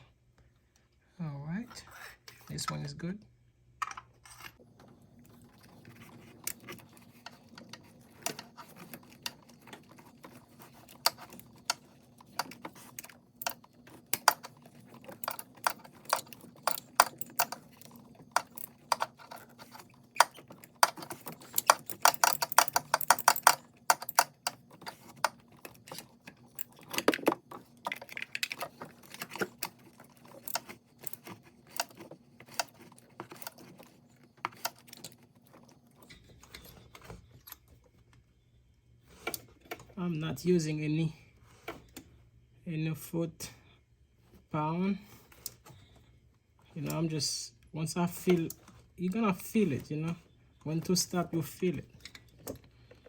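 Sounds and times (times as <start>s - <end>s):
socket clinking: 3.9s - 37.6s.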